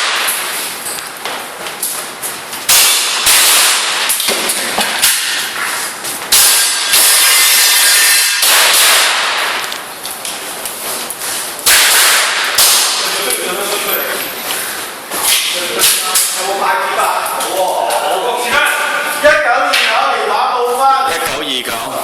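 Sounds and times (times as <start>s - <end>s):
airsoft pistol shots: 2.7s - 5.4s, 6.3s - 9.6s, 11.6s - 13.1s.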